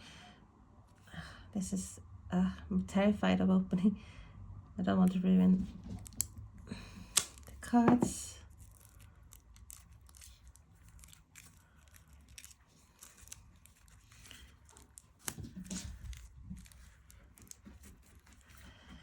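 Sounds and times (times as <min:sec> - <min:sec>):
plastic wrap crinkling: 0:07.0 - 0:19.0
plastic rustle: 0:08.4 - 0:19.0.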